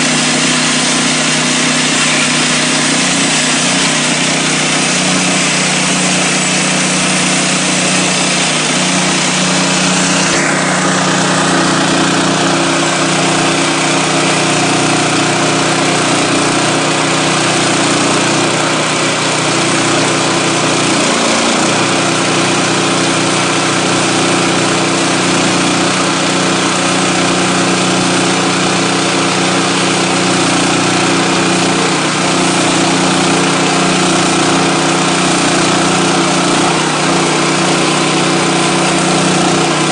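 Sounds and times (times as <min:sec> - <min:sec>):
high whine: 0:00.0 - 0:22.6
gasoline engine running: 0:00.0 - 0:39.9.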